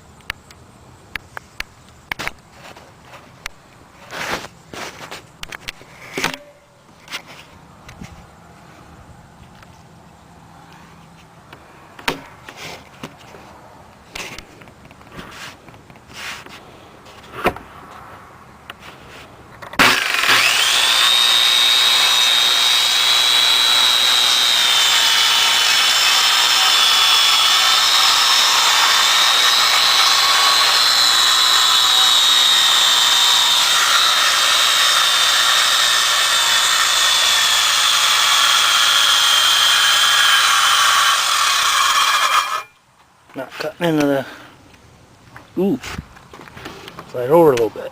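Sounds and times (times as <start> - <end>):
electric power saw whining: 19.8 - 42.8.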